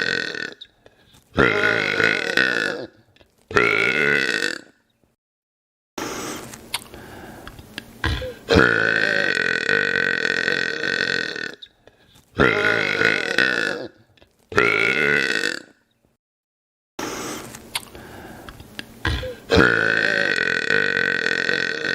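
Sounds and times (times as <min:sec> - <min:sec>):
man burping loudly: 0:00.0 - 0:00.6, 0:01.4 - 0:04.8, 0:08.0 - 0:11.7, 0:12.4 - 0:15.8, 0:19.0 - 0:21.9.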